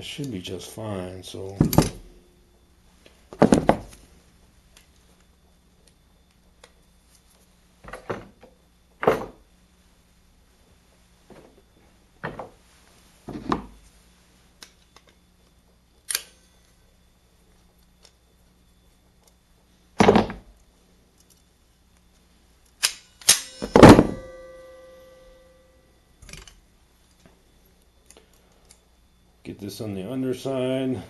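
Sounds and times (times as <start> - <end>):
metallic ring: 22.8 - 26.4.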